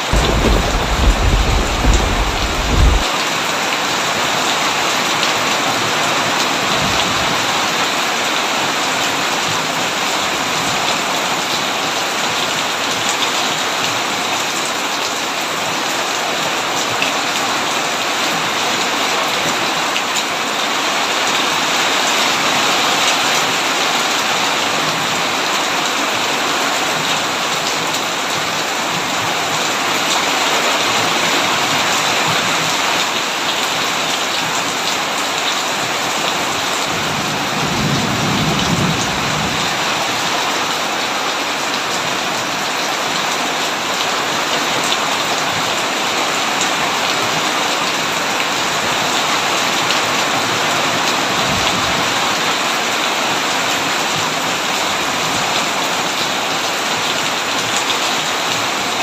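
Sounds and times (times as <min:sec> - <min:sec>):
thunder rumbling: 0:00.0 - 0:03.1
heavy rain on a tin roof: 0:00.0 - 0:59.0.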